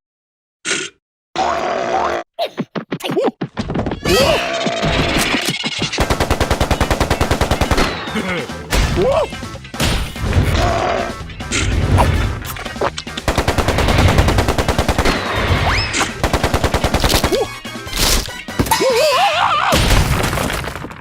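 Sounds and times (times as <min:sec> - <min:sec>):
cartoon rapid bangs: 0:04.2 - 0:19.0, 0:19.6 - 0:21.0.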